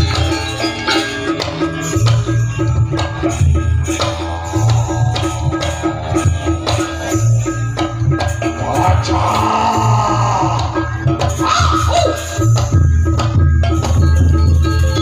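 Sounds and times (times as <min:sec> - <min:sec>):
drums: 0:00.0 - 0:15.0
pitched percussion note repeating: 0:00.0 - 0:15.0
low drone: 0:01.0 - 0:11.2.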